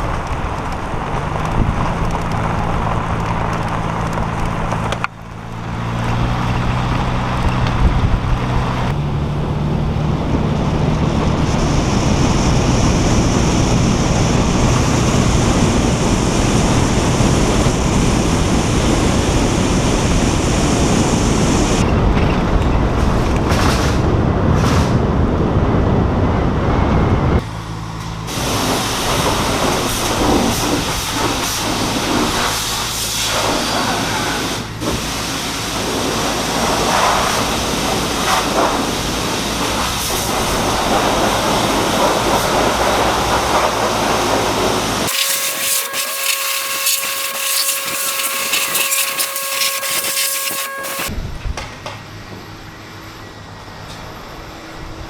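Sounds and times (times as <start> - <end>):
vehicle engine hum: 0.0 - 51.1
road noise: 0.0 - 51.2.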